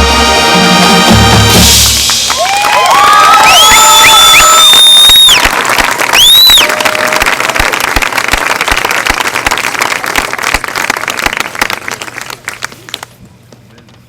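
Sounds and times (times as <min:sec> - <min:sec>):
crowd applauding and cheering: 0:01.4 - 0:13.2
shrill whistle: 0:03.1 - 0:05.5, 0:06.1 - 0:07.1.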